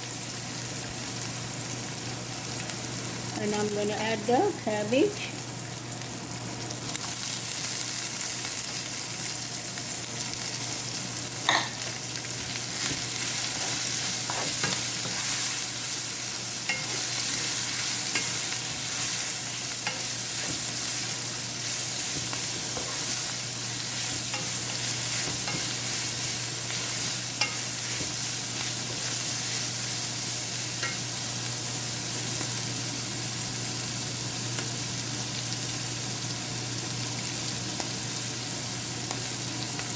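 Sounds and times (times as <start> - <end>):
food sizzling in hot oil: 0.0 - 39.9.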